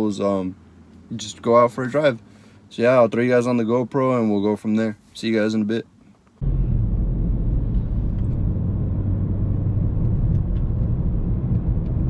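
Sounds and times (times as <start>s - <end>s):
car engine low drone: 6.4s - 12.0s.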